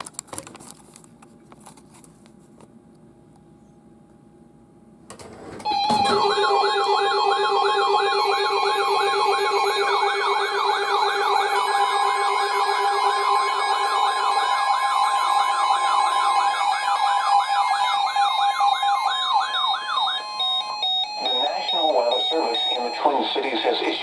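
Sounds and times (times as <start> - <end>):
steady alarm tones: 5.5 - 24.0
electronic alert siren wailing: 5.6 - 24.0.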